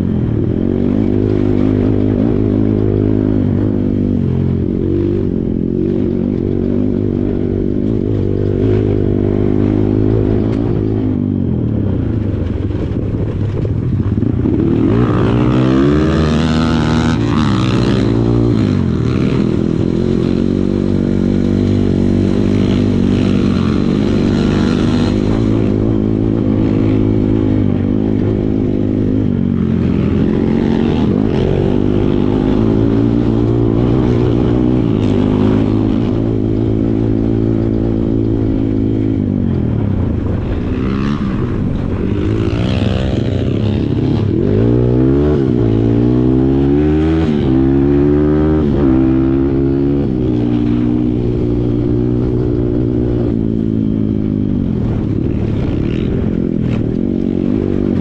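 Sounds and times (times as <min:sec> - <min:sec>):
dirt bike engine revving: 0:00.0 - 0:58.0.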